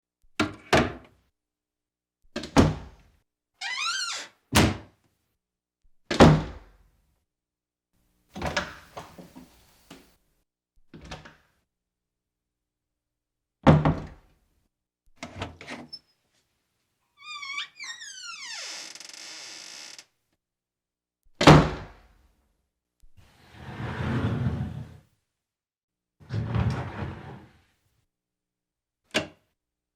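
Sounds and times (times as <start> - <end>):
door creaking: 3.6 - 4.4, 17.2 - 20.1.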